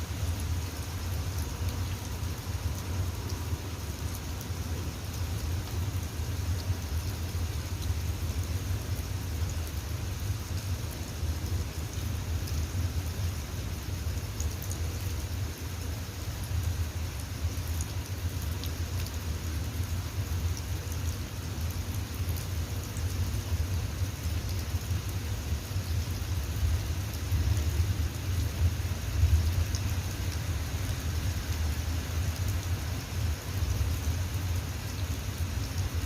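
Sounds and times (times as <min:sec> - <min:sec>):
rain falling: 0:00.0 - 0:36.0.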